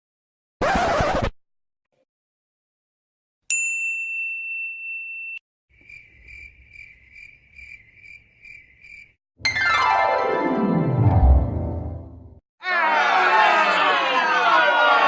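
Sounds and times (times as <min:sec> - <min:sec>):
cricket chirping effect: 0:05.7 - 0:09.2.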